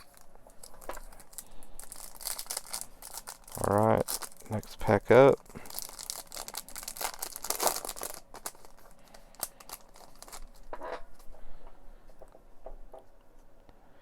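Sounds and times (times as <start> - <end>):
foil wrapper crinkling: 0.0 - 10.8.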